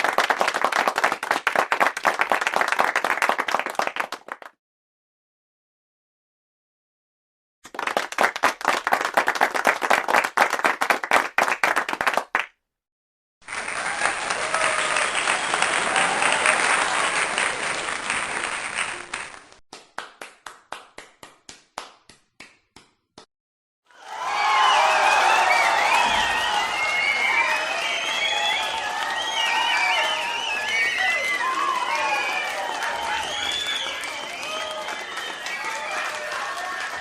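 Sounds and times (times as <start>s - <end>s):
audience applauding: 0.0s - 4.6s, 7.7s - 12.5s, 13.4s - 22.0s, 23.9s - 37.0s
group clapping quickly: 0.0s - 4.6s, 7.6s - 12.6s, 13.4s - 23.3s, 23.9s - 37.0s
crowd noise: 13.5s - 19.6s, 23.9s - 37.0s.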